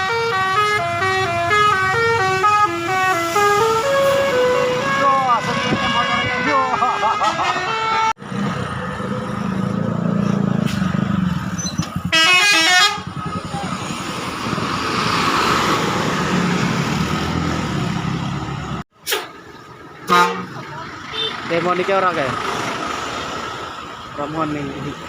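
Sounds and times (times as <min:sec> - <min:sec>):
multi-tone bus horn: 0:00.0 - 0:08.2, 0:12.0 - 0:13.2, 0:20.0 - 0:21.5
heavy vehicle engine rumble: 0:00.0 - 0:25.0.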